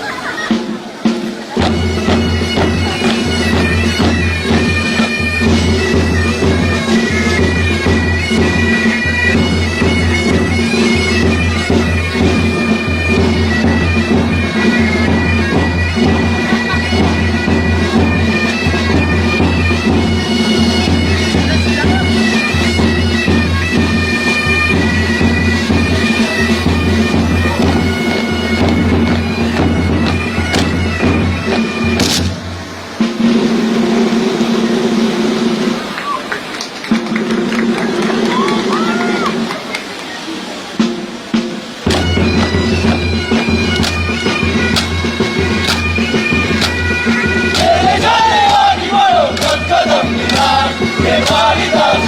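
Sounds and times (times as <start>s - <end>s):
bagpipes playing a tune: 1.6s - 32.0s, 41.8s - 52.0s.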